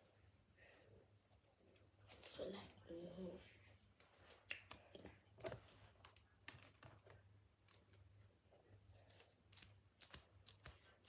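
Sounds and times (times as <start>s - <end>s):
small clicks and handling noises: 4.0s - 8.1s.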